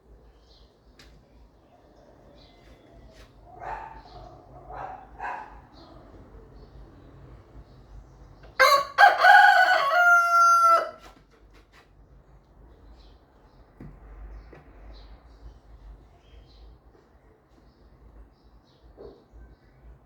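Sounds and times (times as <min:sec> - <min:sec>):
rooster crowing: 0:08.6 - 0:11.0
short quieter rooster calls: 0:08.6 - 0:11.1.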